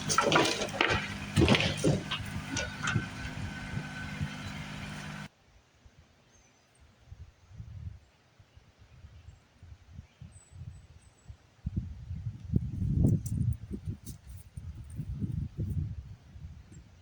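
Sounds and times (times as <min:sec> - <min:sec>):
engine running: 0:00.0 - 0:05.3
wood breaking with cracks: 0:00.0 - 0:05.3.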